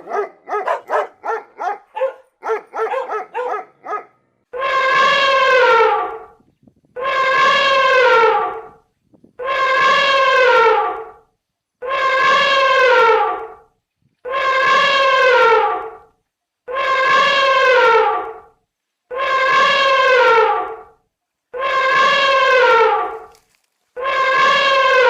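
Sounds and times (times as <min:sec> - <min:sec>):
animal's horn-like call: 0:04.5 - 0:06.3, 0:07.0 - 0:08.8, 0:09.4 - 0:11.2, 0:11.8 - 0:13.5, 0:14.2 - 0:16.0, 0:16.7 - 0:18.4, 0:19.1 - 0:20.8, 0:21.5 - 0:23.2, 0:24.0 - 0:25.0.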